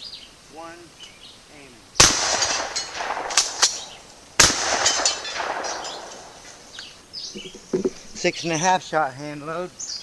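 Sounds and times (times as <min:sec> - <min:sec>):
shotgun blasts with echo: 0:02.0 - 0:06.4.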